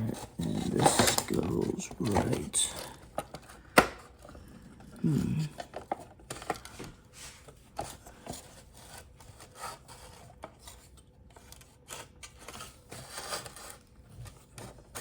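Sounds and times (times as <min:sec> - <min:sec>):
parts rubbing and scraping: 0:00.0 - 0:03.5.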